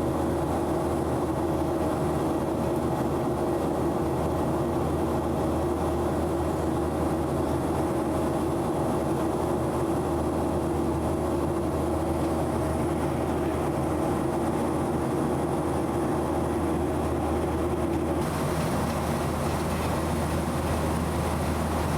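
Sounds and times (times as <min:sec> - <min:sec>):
airplane cabin drone: 0:09.7 - 0:21.9.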